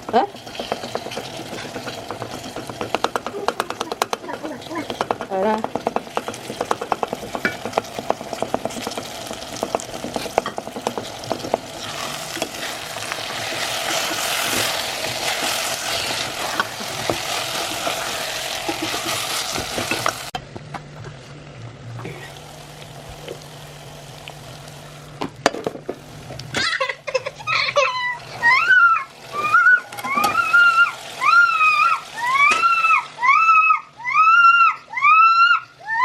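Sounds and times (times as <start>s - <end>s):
spoon scraping a pot: 0.0s - 20.3s
meat sizzling in a pot: 0.0s - 20.4s, 22.1s - 36.0s.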